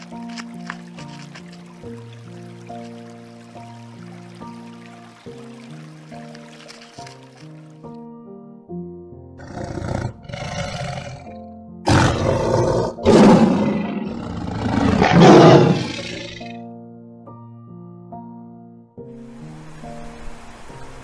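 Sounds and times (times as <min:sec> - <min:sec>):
soft background music: 0:00.0 - 0:21.0
big cat roaring: 0:09.4 - 0:11.3, 0:11.9 - 0:16.5.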